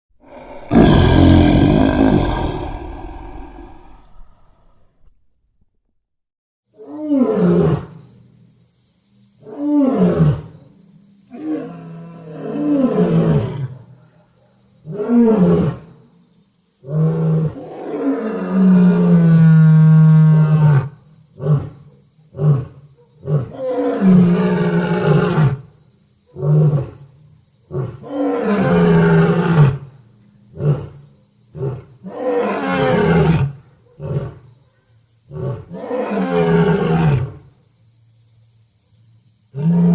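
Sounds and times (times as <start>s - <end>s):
lion roaring and grunting: 0.2s - 5.1s, 35.4s - 37.4s.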